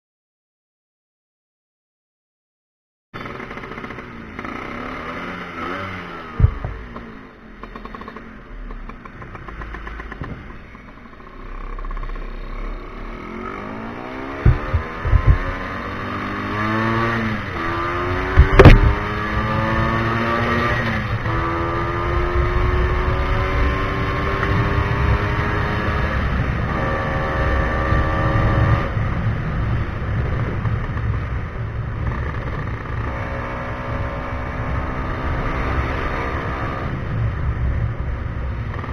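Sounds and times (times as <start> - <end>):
scooter engine revving: 3.2 - 29.2
sharp knocks: 6.4 - 7.0, 14.4 - 15.6, 18.3 - 19.2.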